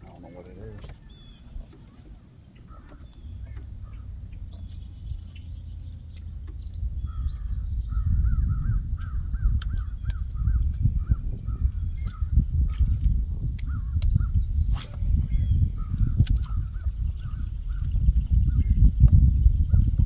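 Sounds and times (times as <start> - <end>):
bird calling: 0.0 - 10.5.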